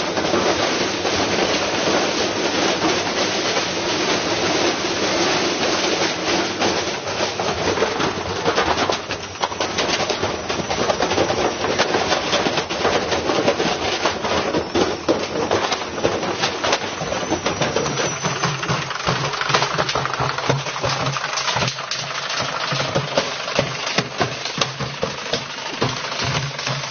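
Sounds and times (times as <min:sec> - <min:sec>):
brick banging in washing machine drum: 0:07.3 - 0:26.9.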